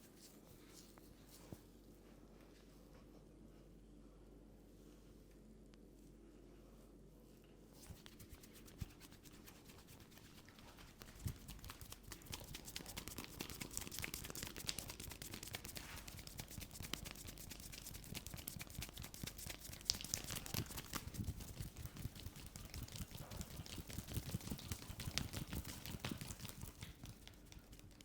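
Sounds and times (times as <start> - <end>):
hands rubbing through hair: 0.0 - 1.6, 7.8 - 28.0.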